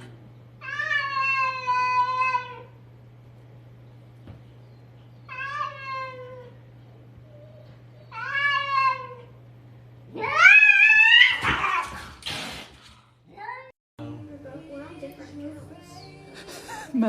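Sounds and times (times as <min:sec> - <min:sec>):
cat screeching: 0:00.6 - 0:02.7, 0:05.3 - 0:06.5, 0:08.1 - 0:09.3, 0:10.1 - 0:12.1
cats yowling: 0:00.6 - 0:02.8, 0:05.3 - 0:06.6, 0:07.3 - 0:09.4, 0:10.1 - 0:12.1.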